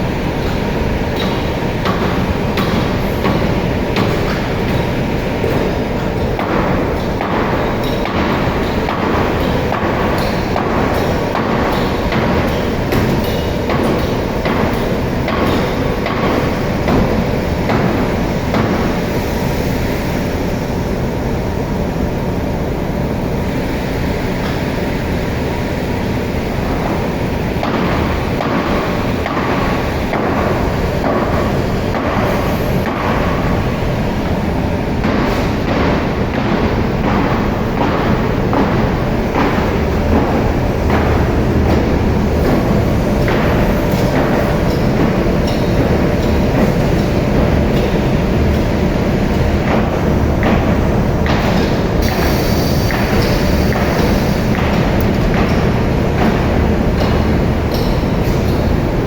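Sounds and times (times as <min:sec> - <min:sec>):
machinery humming: 0:00.0 - 0:59.0
sharp knocks and clatters: 0:00.4 - 0:19.0, 0:35.0 - 0:59.0.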